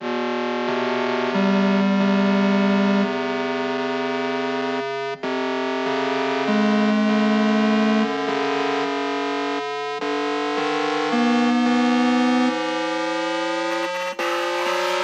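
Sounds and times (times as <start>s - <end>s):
sustained synthesizer chords: 10.0s - 15.0s.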